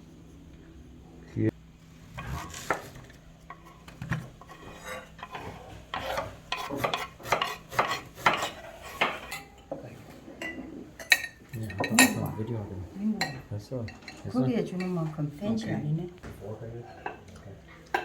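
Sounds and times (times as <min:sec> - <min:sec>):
spoon stirring and scraping in bowl: 0:02.2 - 0:12.3.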